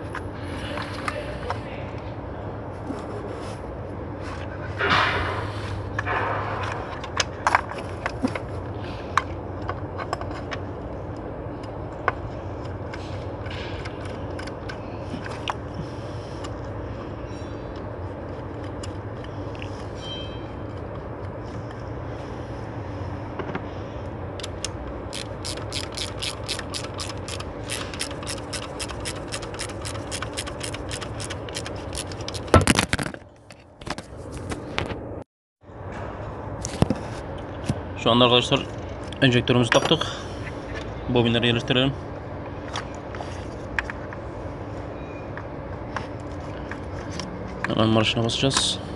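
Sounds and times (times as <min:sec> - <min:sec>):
ratchet wrench clicking: 0:25.1 - 0:32.5.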